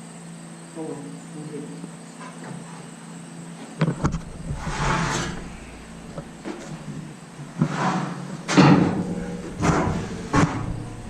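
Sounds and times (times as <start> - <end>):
scraping: 3.9 - 11.0
gear knocking and thumping: 4.0 - 7.6, 8.5 - 11.0
low engine hum: 4.0 - 7.6, 8.8 - 11.0.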